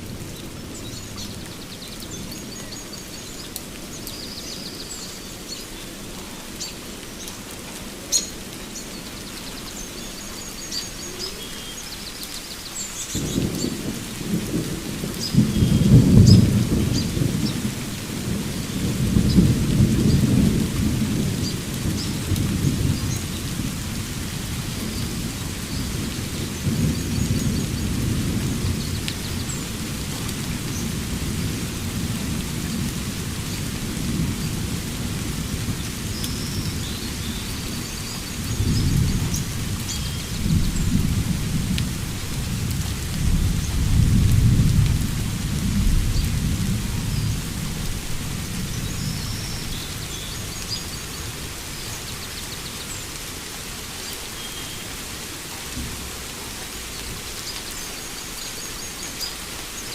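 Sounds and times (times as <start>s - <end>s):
steady rain: 0.0s - 59.9s
birds chirping: 0.1s - 14.3s, 35.8s - 41.3s, 48.4s - 53.2s
thunder rumbling: 13.1s - 51.8s.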